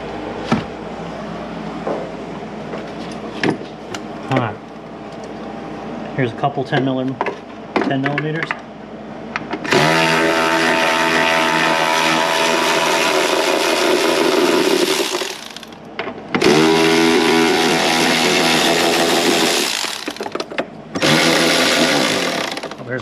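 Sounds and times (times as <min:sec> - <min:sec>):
power tool motor whining: 0:09.7 - 0:15.8, 0:16.4 - 0:20.3, 0:21.0 - 0:22.8.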